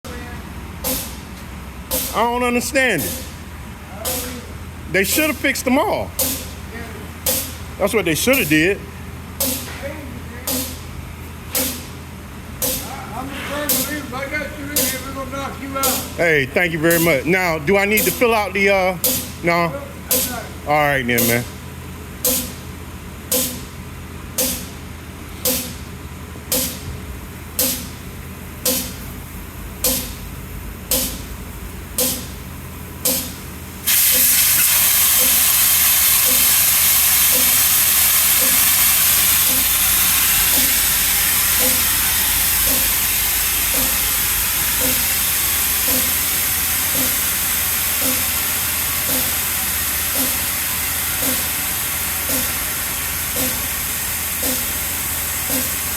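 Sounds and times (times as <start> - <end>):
continuous air hiss: 0.1 - 55.9
faint regular blip: 29.8 - 30.2, 32.0 - 32.3, 41.6 - 41.8, 44.8 - 45.0.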